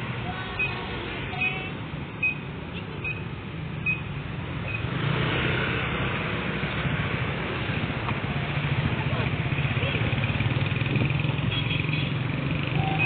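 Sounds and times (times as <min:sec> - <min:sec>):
short high beeps: 0:01.4 - 0:04.1, 0:12.8 - 0:13.0.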